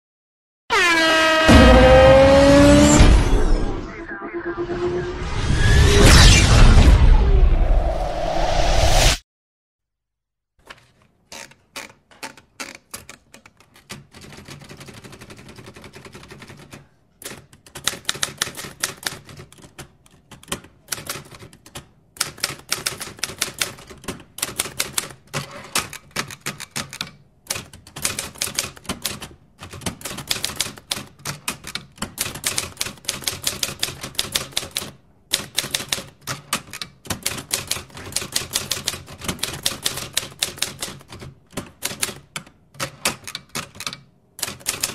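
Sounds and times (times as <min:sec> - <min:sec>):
typewriter keys clacking: 0:10.6 - 0:44.9.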